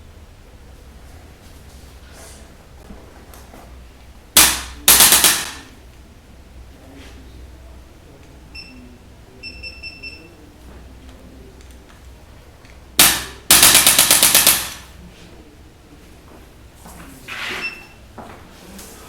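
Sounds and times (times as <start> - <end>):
adjusting instrument firing: 4.4 - 5.6, 13.0 - 14.8.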